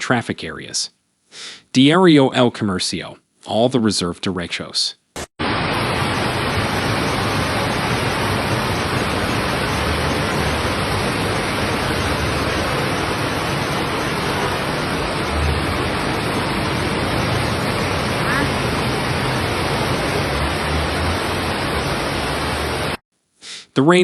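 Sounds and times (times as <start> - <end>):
floodwater running: 5.4 - 23.0
heavy rain: 5.4 - 23.0.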